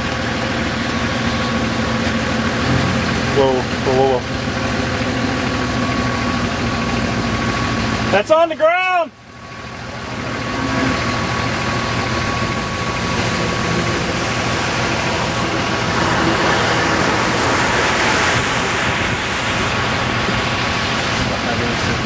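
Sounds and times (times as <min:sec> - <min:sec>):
vehicle engine idling: 0:00.0 - 0:22.0
wind buffeting microphone: 0:16.8 - 0:22.0.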